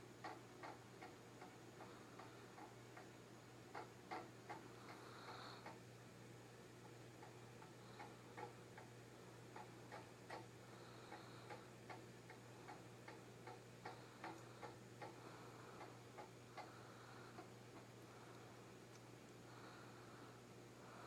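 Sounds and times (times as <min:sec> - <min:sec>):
faint steady ticking: 0:00.0 - 0:21.0
low steady hum: 0:00.0 - 0:21.0.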